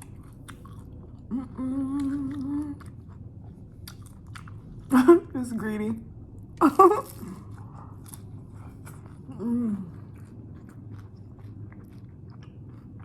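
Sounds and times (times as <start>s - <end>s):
wet mouth clicks: 0.0s - 0.9s
chewing crunchy taco shell: 0.0s - 4.9s, 7.0s - 13.0s
person humming: 1.3s - 2.8s, 9.3s - 9.9s.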